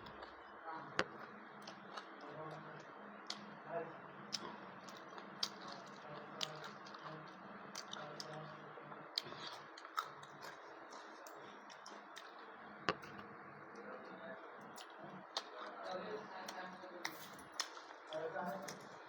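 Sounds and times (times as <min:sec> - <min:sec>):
person chewing and eating: 0:01.0 - 0:03.6, 0:04.2 - 0:13.3, 0:14.6 - 0:15.8, 0:17.5 - 0:18.9
wet mouth clicks and smacks: 0:03.2 - 0:03.5, 0:04.3 - 0:07.1, 0:07.7 - 0:08.4, 0:14.7 - 0:15.7, 0:16.5 - 0:18.2.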